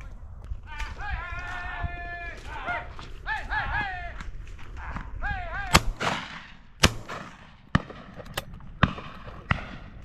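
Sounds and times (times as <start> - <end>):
shotgun shots: 5.7 - 10.0.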